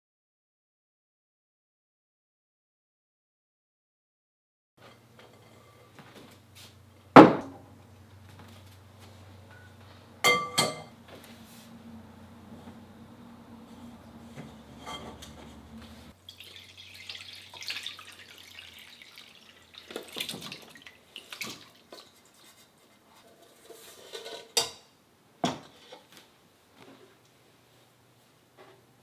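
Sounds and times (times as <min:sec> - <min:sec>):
low hum: 0:06.4 - 0:16.1
metal pots clinking: 0:09.5 - 0:11.0, 0:13.7 - 0:22.7
water dripping and splashing: 0:16.1 - 0:22.6.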